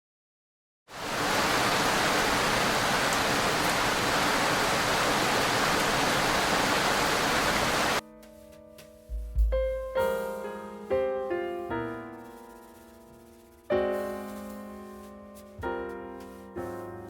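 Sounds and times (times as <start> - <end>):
heavy rain: 0.9 - 8.0.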